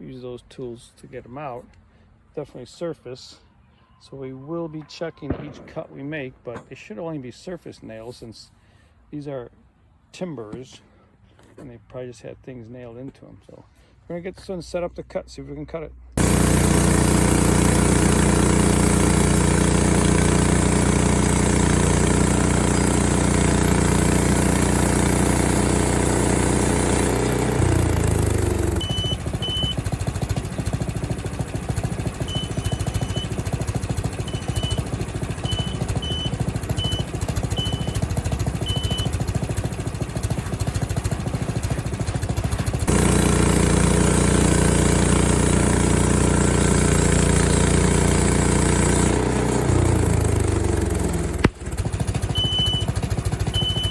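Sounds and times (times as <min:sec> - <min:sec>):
gasoline engine running: 0:16.2 - 0:53.9
short high beeps: 0:28.8 - 0:29.8, 0:32.3 - 0:33.4, 0:34.3 - 0:34.8, 0:35.4 - 0:38.0, 0:38.6 - 0:39.1, 0:52.4 - 0:52.9, 0:53.6 - 0:53.9.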